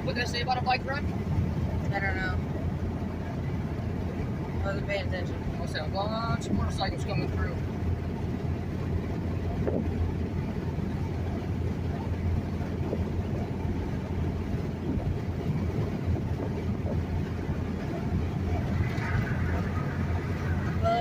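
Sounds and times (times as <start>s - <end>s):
truck cab road rumble: 0.0s - 21.0s.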